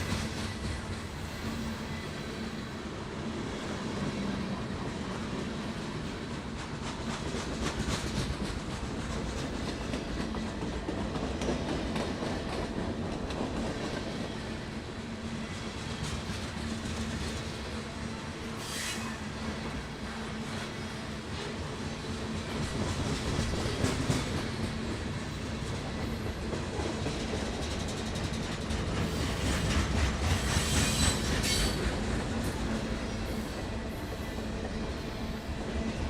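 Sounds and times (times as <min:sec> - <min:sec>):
train rumbling on track: 0:00.0 - 0:36.0.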